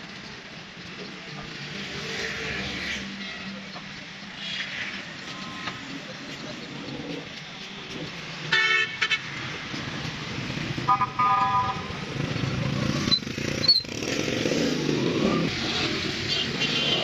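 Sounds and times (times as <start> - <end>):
motorcycle passing: 1.5 - 3.5, 9.3 - 17.0
car horn honks: 8.5 - 9.2, 10.9 - 11.9.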